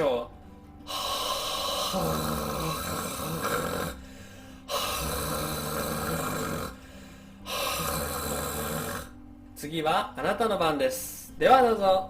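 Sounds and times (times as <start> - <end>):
person snoring with rattling exhalations: 0.8 - 9.2.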